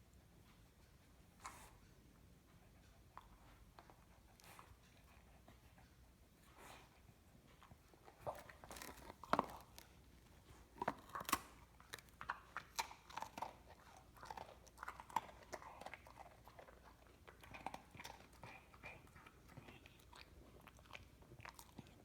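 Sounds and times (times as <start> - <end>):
biscuit crunching: 8.1 - 9.9.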